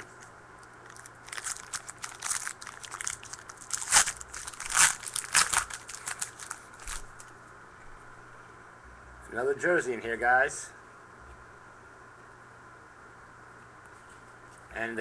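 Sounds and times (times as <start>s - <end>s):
foil wrapper crinkling: 0.0s - 7.3s.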